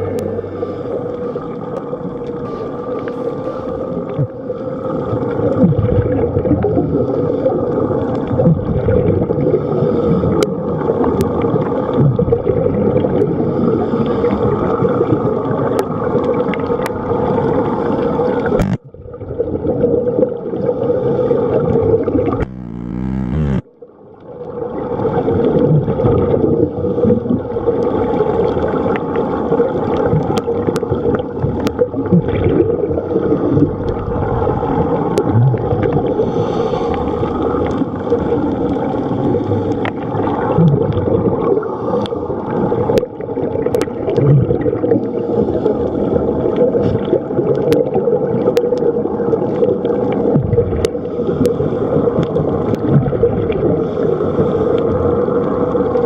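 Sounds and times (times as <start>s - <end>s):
muffled low drone: 0.0s - 2.4s, 22.4s - 23.8s.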